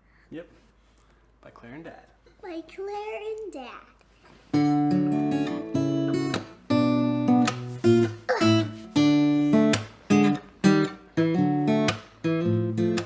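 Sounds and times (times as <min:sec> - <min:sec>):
acoustic guitar strumming chords: 0:04.5 - 0:13.0.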